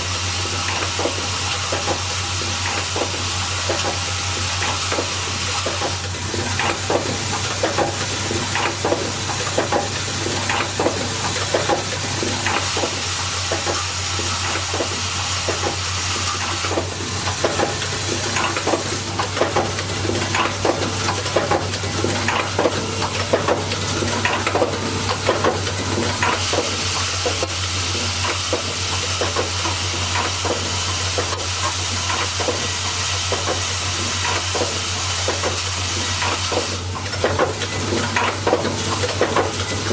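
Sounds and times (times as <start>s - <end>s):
machine hum and hiss: 0.0s - 39.9s.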